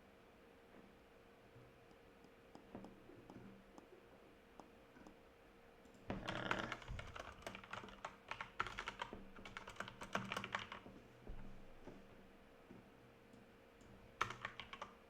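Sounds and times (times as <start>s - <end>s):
keyboard typing: 6.1s - 10.9s, 14.2s - 15.0s.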